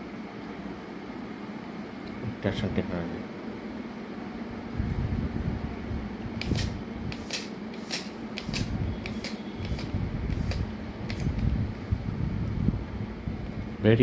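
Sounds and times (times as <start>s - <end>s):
tape measure clicking: 6.4s - 11.5s.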